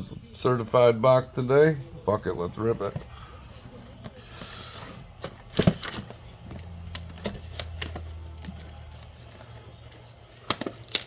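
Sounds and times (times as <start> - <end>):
plastic wrap and cardboard tearing: 5.5 - 11.0.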